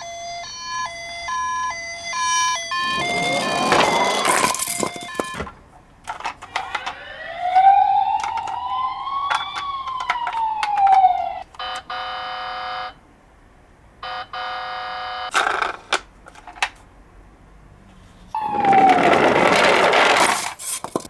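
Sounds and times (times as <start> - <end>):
toy siren wailing: 0.0 - 5.5, 6.5 - 13.0, 18.4 - 19.6.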